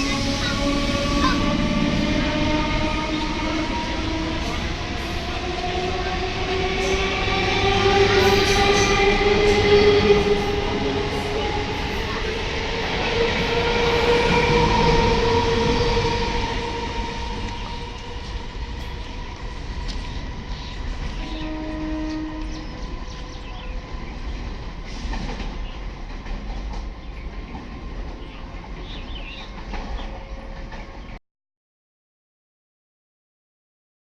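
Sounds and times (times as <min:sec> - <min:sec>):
rail rumble: 0:00.0 - 0:31.2.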